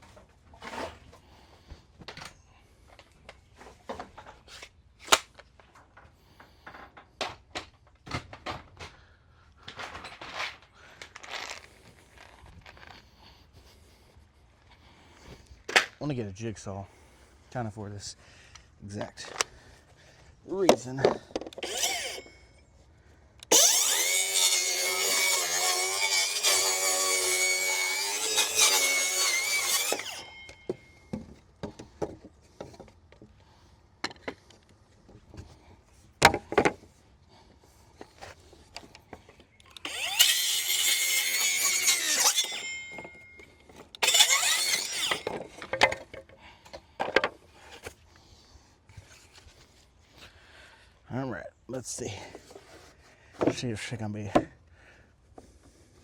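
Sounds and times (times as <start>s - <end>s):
power saw cutting wood: 21.5s - 22.6s, 23.4s - 31.2s, 39.1s - 46.1s.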